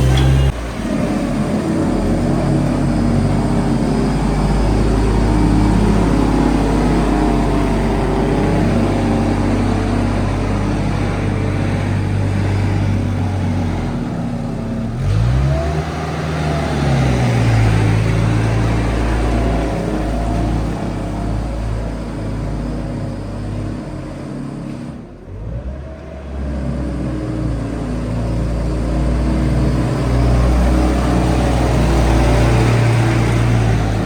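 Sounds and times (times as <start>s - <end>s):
vehicle engine running: 0.0s - 24.4s.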